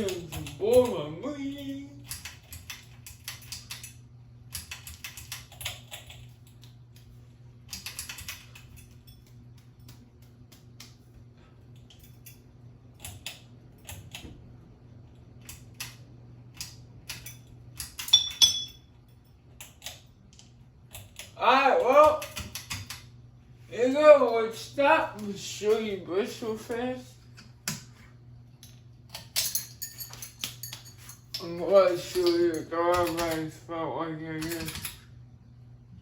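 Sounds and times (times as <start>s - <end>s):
steady low hum: 0.0s - 36.0s
ringing metallic clicks: 18.0s - 18.8s.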